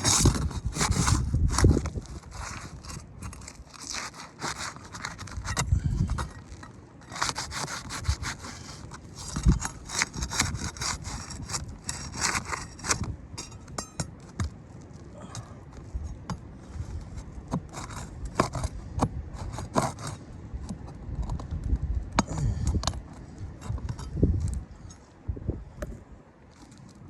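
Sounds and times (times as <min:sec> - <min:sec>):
hand tool scraping roof shingles: 0:00.0 - 0:21.6.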